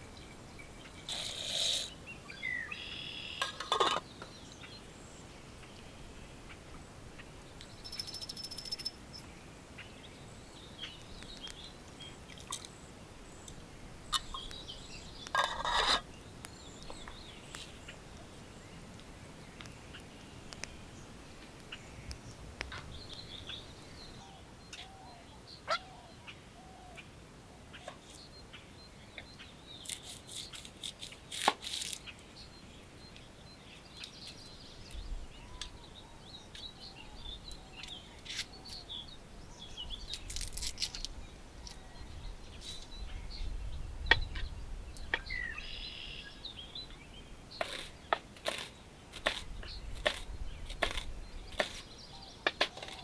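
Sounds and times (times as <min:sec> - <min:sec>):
faint bird chirps: 0:07.2 - 0:10.1, 0:32.1 - 0:48.1.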